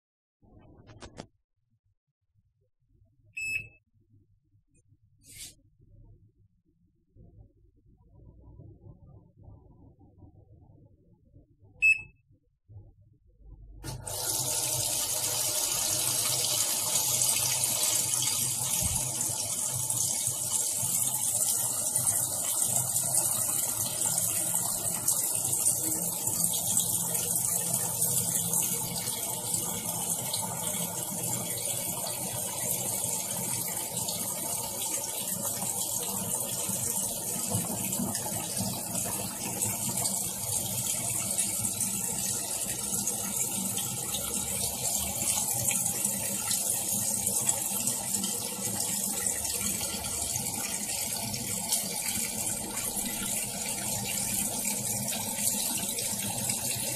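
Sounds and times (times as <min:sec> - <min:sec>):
washing machine water rushing: 0:13.8 - 0:56.9.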